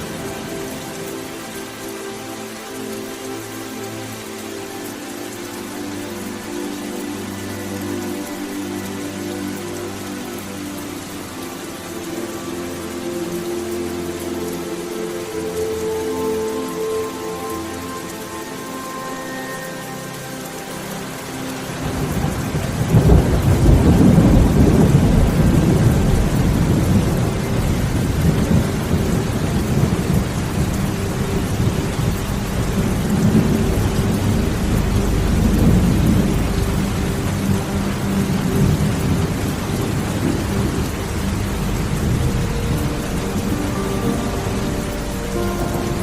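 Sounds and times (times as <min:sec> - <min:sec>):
heavy rain falling: 0:00.0 - 0:46.0
thunder rumbling: 0:21.9 - 0:46.0.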